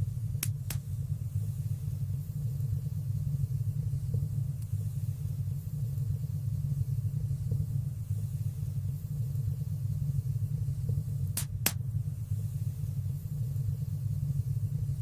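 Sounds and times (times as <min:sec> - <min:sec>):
fire burning in fireplace: 0:00.0 - 0:15.0
crackling pops: 0:00.4 - 0:01.0, 0:11.2 - 0:12.0.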